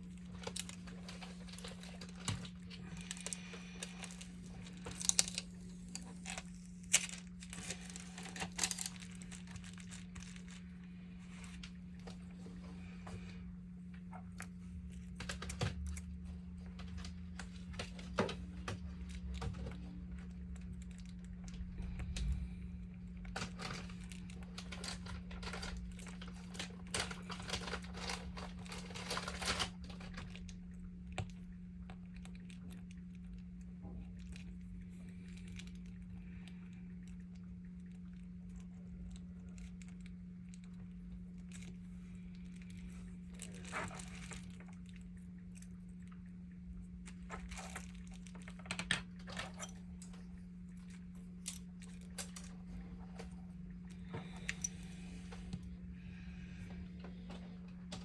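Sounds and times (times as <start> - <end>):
low electrical hum: 0.0 - 58.0.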